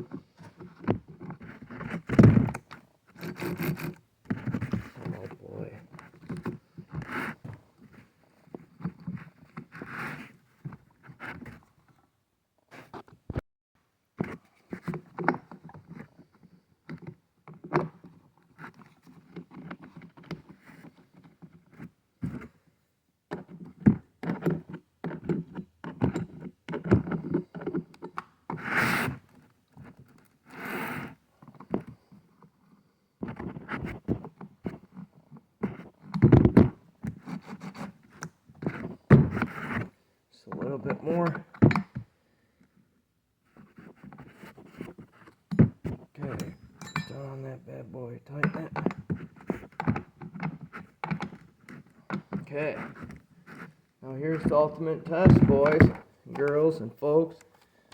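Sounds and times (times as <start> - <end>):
plastic and metal parts scraping: 0.1 - 11.6, 43.5 - 47.4, 48.3 - 57.7.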